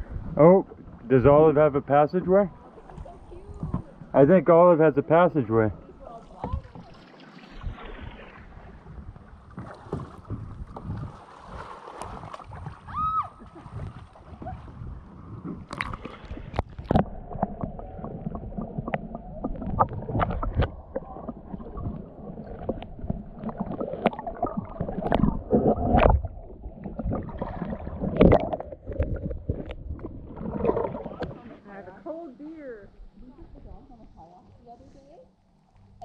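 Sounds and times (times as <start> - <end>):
water gurgling along hull: 0.0 - 36.0
paddle strokes splashing: 5.8 - 31.8.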